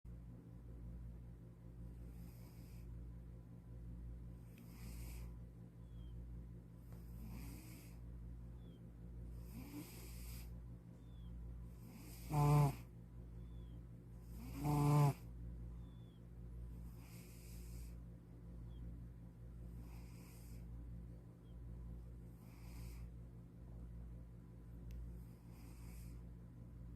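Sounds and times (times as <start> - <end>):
cat snoring: 2.0 - 2.9, 4.5 - 5.4, 7.0 - 8.0, 9.3 - 11.2, 11.8 - 12.9, 14.3 - 16.1, 16.9 - 18.0, 19.8 - 20.6, 22.3 - 23.1, 25.3 - 26.2.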